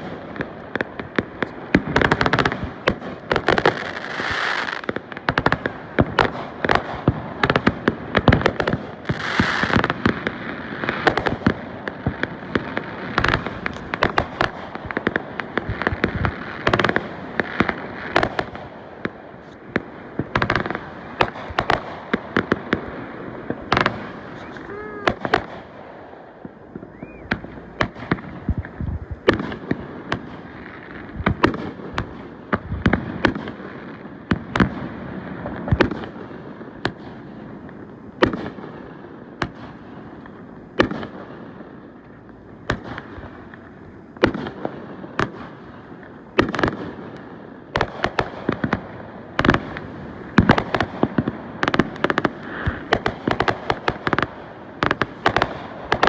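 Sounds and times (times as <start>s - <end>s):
fireworks banging: 0.0s - 33.6s, 47.7s - 56.0s.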